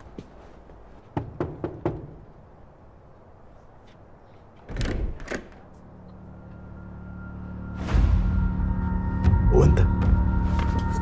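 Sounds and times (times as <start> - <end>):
low suspense music tones: 5.8 - 11.0.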